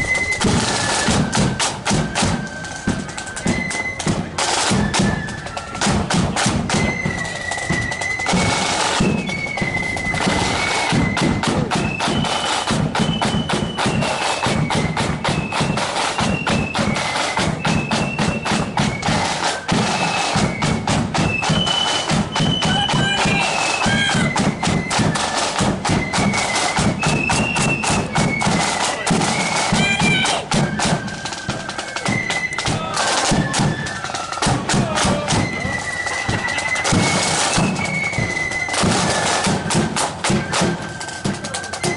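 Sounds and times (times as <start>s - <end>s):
flutes playing high melody: 0.0s - 41.9s
snare drum rolls: 0.0s - 41.9s.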